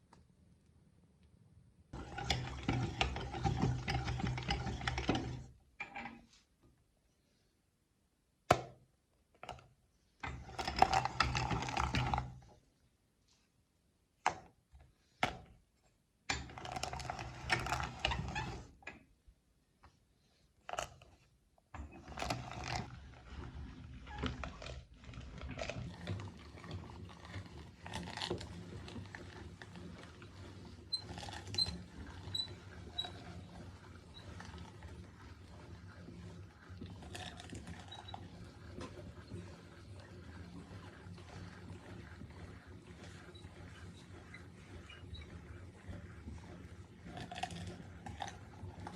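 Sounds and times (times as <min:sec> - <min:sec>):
meat grinder running: 0:02.0 - 0:05.4, 0:22.3 - 0:48.9.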